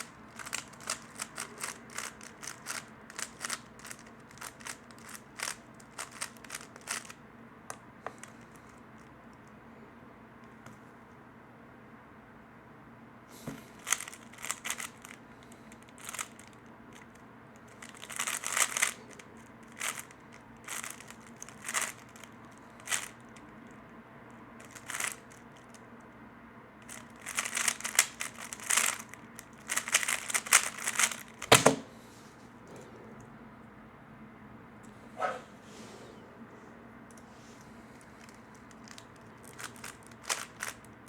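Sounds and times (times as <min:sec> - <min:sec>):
puzzle cube clicking: 0:00.0 - 0:07.1, 0:18.1 - 0:19.0, 0:26.9 - 0:29.0, 0:29.7 - 0:31.6, 0:38.2 - 0:40.8.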